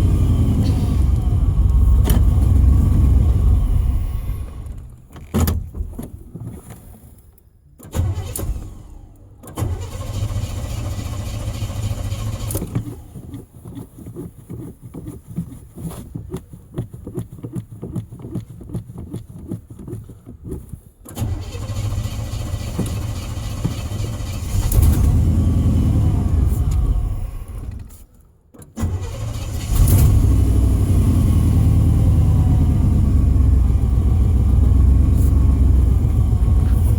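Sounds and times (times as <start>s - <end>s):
truck engine stumbling and revving: 0.0s - 5.0s, 8.0s - 13.2s, 21.2s - 27.9s, 28.8s - 36.9s
engine cranking chugging: 9.6s - 13.1s, 21.2s - 27.8s, 28.8s - 30.8s.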